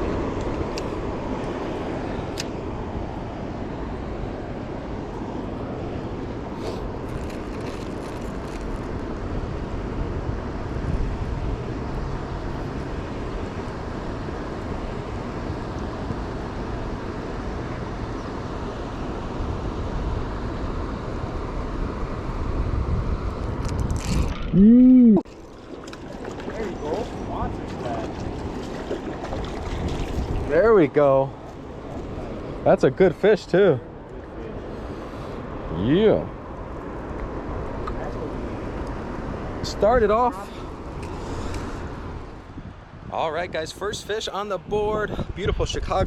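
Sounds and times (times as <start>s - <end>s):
distant city traffic: 0.0s - 23.6s, 25.2s - 44.8s
wind on microphone: 19.2s - 30.8s, 40.8s - 46.0s.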